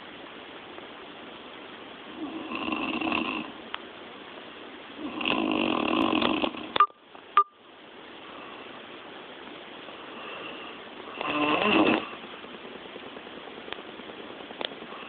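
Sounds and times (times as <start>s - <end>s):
woman snoring loudly: 2.1s - 3.5s, 5.0s - 6.7s, 11.2s - 12.1s.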